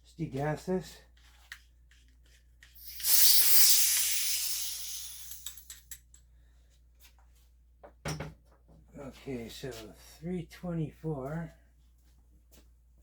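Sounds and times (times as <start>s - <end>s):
compressed gas hissing: 2.8s - 5.8s.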